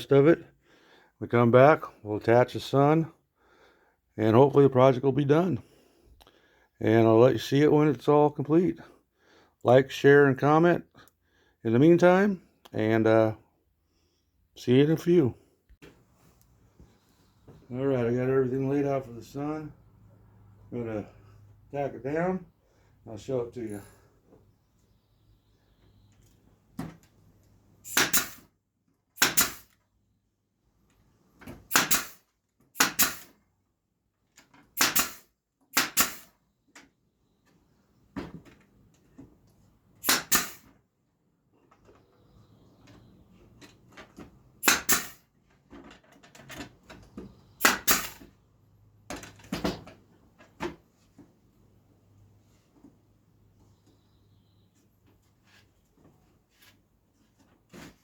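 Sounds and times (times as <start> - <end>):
nail gun firing: 27.8 - 28.5, 29.2 - 29.8, 31.7 - 33.4, 34.8 - 36.3, 40.0 - 40.7, 44.6 - 45.2, 47.6 - 48.3.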